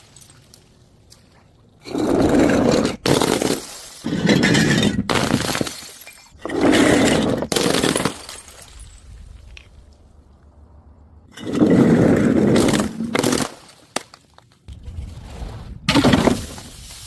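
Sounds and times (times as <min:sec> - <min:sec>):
glass breaking and crunching: 0:03.0 - 0:09.1, 0:12.5 - 0:14.3.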